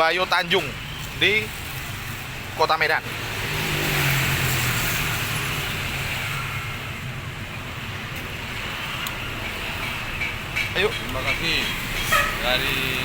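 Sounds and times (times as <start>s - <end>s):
steady traffic hum: 0.0s - 13.0s
vehicle passing by: 3.0s - 10.0s.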